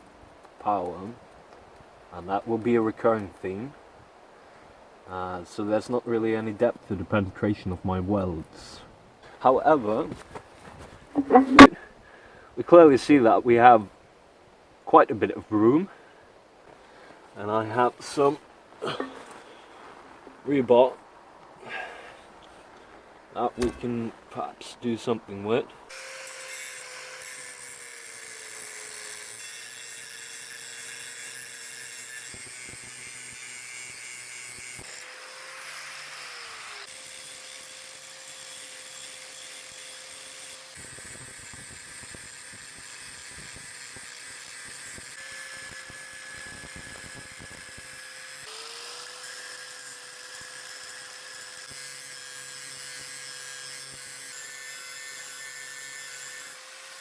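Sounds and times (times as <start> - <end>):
power tool whining on metal: 23.6 - 23.9, 25.9 - 57.0.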